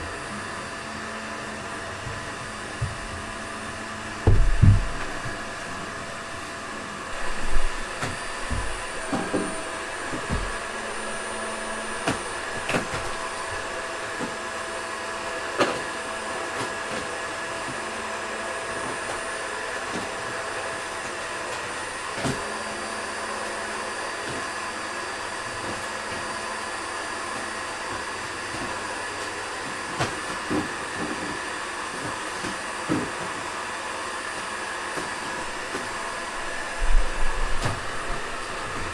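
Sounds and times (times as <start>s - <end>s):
vacuum cleaner running: 0.0s - 38.9s
low thumps: 4.2s - 6.3s.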